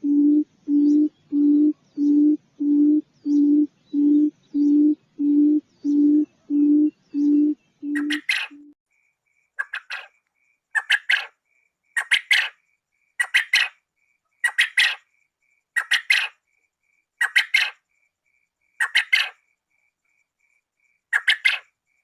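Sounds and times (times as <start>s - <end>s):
quail call: 4.8s - 8.8s, 9.6s - 10.1s, 21.2s - 21.7s.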